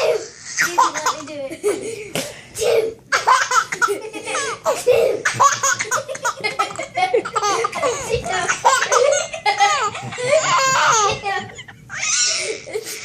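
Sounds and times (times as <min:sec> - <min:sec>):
baby laughing and giggling: 0:02.6 - 0:13.0.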